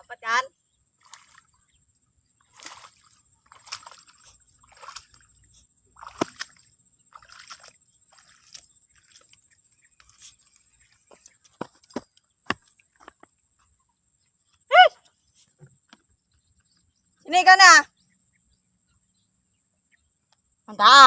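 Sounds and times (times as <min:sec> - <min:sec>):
water splashing and sloshing: 0:00.8 - 0:13.2.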